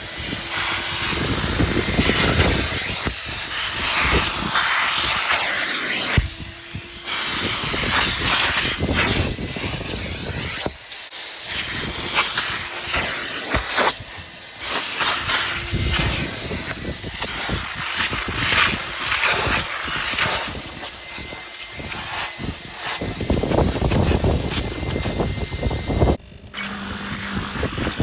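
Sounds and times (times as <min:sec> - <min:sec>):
wet vacuum spraying and sucking: 0:00.0 - 0:28.0
wind rumbling on microphone: 0:00.1 - 0:05.2, 0:15.4 - 0:26.2, 0:27.1 - 0:28.0.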